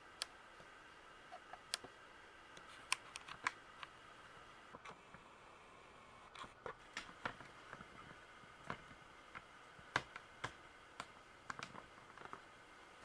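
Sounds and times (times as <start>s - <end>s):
small clicks and taps: 8.6s - 12.5s.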